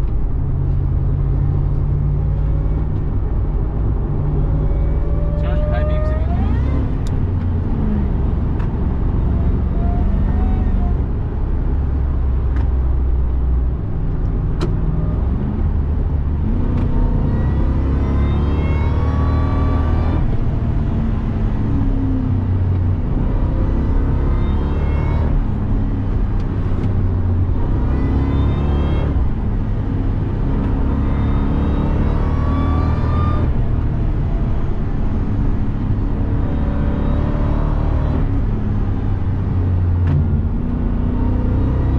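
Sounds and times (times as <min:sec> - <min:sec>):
supercharger whine: 0:00.0 - 0:11.8
truck engine revving through gears: 0:00.0 - 0:41.9.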